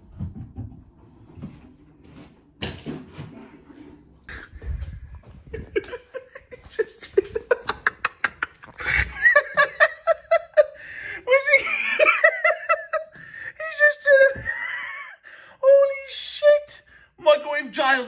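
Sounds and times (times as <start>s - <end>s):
person laughing: 4.3s - 13.2s.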